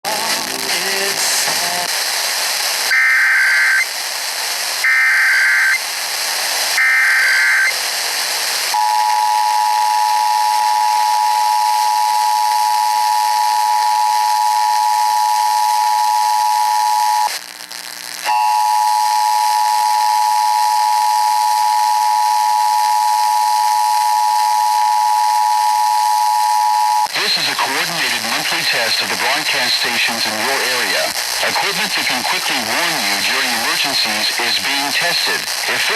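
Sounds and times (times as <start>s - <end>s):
radio hiss: 0.0s - 18.2s, 27.0s - 35.9s.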